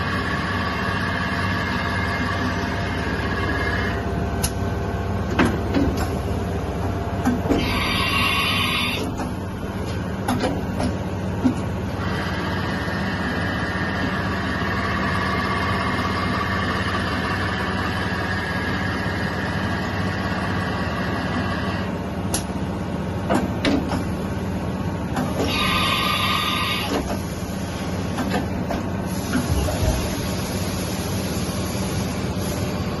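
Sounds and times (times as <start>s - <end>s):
high even machine whine: 0.0s - 5.2s, 6.1s - 9.9s, 11.8s - 22.2s, 25.3s - 28.0s
milling machine low hum: 0.0s - 33.0s.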